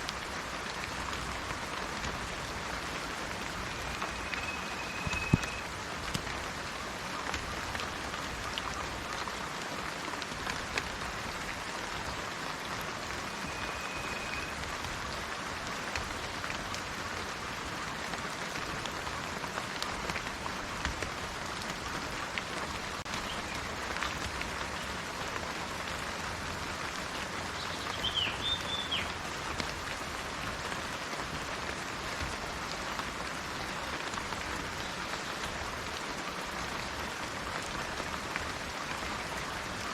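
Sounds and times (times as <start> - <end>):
raindrops pattering close by: 0.0 - 39.9
steady rain: 0.0 - 39.9
bird whistle: 3.9 - 5.6, 13.4 - 14.6.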